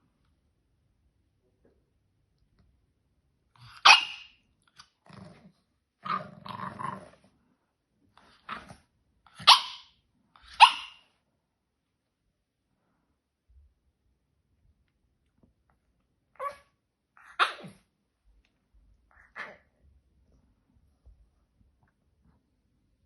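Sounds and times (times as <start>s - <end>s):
small dog barking: 3.6s - 4.4s, 8.4s - 11.1s, 16.4s - 17.8s
dog growling low: 5.0s - 7.3s.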